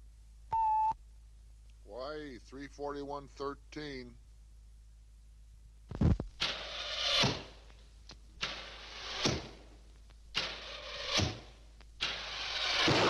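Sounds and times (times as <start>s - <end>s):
arrows whooshing and thunking: 6.4s - 7.6s, 8.4s - 9.7s, 10.4s - 13.0s.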